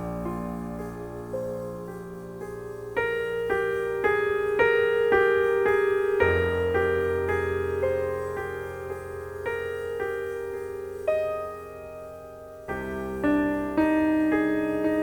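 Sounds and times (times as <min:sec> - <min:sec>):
slow solo piano music: 0:00.0 - 0:15.0.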